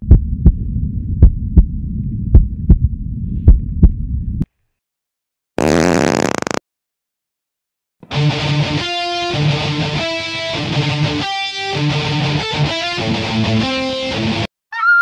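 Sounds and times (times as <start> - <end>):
low rumble: 0.0 - 4.4
heartbeat thumps: 0.0 - 4.5.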